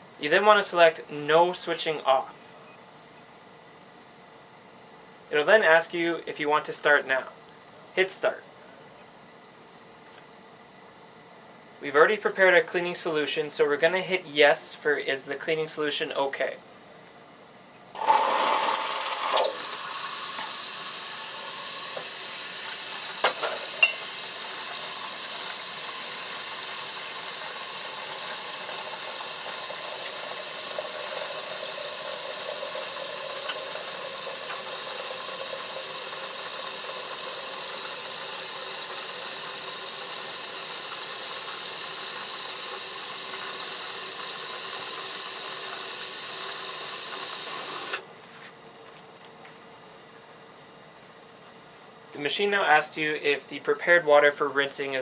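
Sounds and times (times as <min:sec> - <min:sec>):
steady steam hiss: 0:18.0 - 0:48.0.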